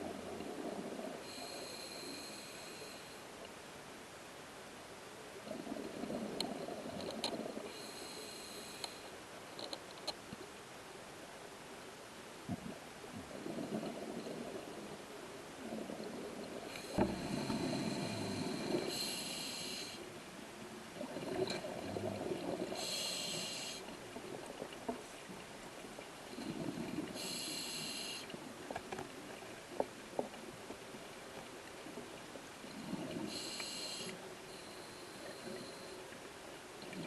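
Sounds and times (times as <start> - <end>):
regulator hiss: 1.3 - 3.3, 7.7 - 9.1, 16.7 - 20.0, 22.7 - 23.9, 27.2 - 28.3, 33.2 - 36.0
small clicks: 9.6 - 10.4
bubbling breath rumble: 12.5 - 20.0.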